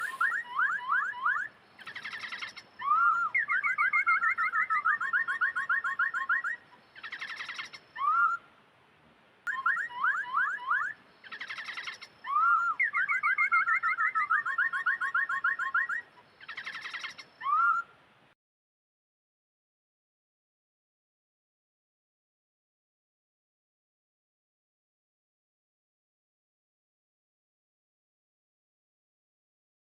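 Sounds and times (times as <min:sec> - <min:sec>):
bird-like chirps and trills: 0:00.0 - 0:08.5, 0:09.5 - 0:18.0.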